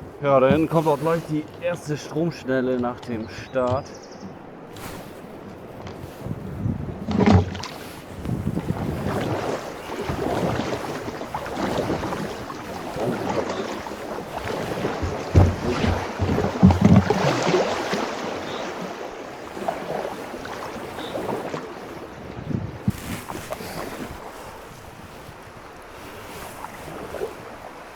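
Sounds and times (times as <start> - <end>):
water splashing around paddle: 0.0 - 27.9
wind on microphone: 0.0 - 27.9
thumps on kayak: 0.4 - 1.2, 2.6 - 18.7.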